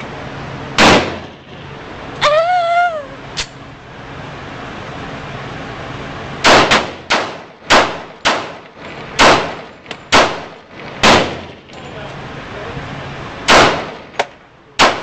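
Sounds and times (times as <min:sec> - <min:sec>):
pistol shots with echo: 0:06.4 - 0:08.6, 0:09.2 - 0:11.5, 0:13.5 - 0:14.0, 0:14.8 - 0:15.0.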